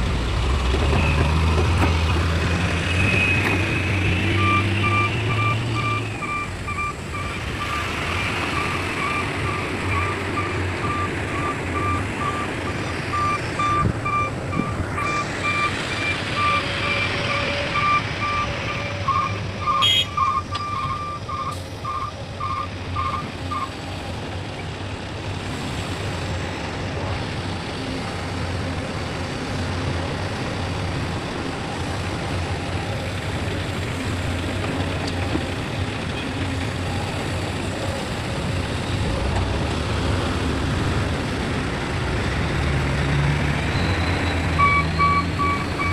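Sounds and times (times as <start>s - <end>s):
reversing alarm beeping: 4.3s - 23.7s, 43.7s - 45.9s.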